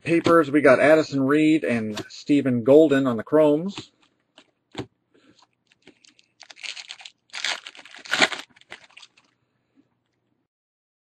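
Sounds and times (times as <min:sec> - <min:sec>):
faint foil crackles: 0:05.2 - 0:09.4
foil wrapper crinkling and tearing: 0:05.6 - 0:09.4.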